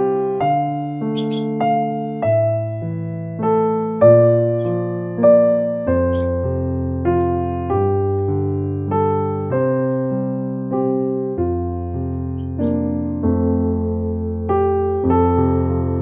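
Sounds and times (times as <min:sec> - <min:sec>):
electric piano slow chords: 0:00.0 - 0:16.0.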